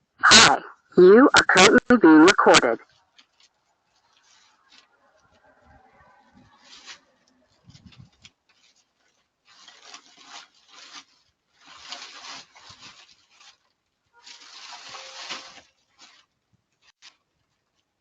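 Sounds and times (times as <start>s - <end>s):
rough rubbing noise: 2.9s - 17.1s.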